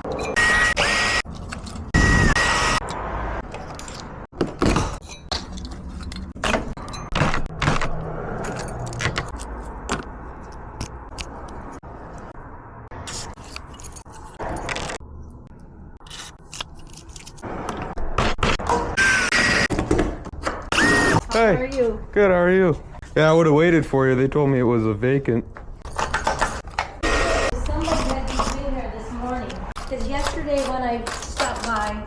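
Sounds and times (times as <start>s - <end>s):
keys jangling: 1.3s - 1.9s, 8.3s - 10.8s, 13.1s - 15.0s
metal clicking and scraping: 2.8s - 18.0s.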